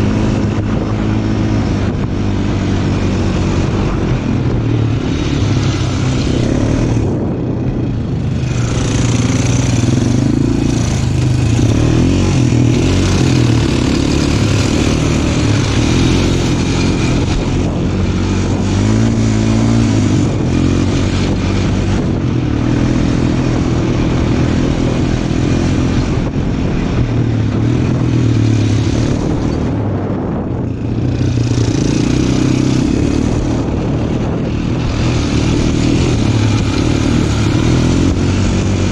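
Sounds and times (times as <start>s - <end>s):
off-road vehicle engine under load: 0.0s - 38.9s
rushing wind: 0.0s - 38.9s
terrain noise: 0.0s - 38.9s.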